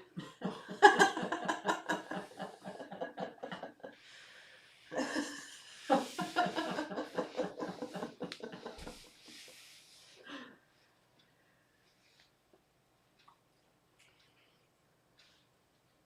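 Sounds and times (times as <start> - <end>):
person laughing: 0.0 - 3.9, 4.9 - 9.1.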